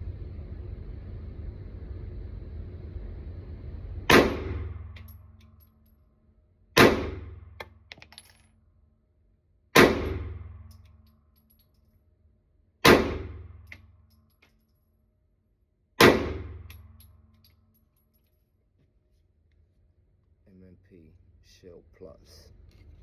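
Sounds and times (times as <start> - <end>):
pistol shots echoing indoors: 4.1 - 5.6, 6.8 - 7.6, 9.7 - 11.3, 12.8 - 14.0, 16.0 - 17.7.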